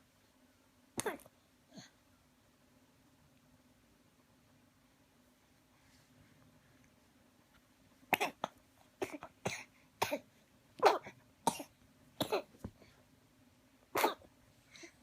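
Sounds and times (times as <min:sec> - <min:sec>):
baby coughing vocal bursts: 0:01.0 - 0:01.3, 0:08.1 - 0:12.7, 0:13.9 - 0:14.3.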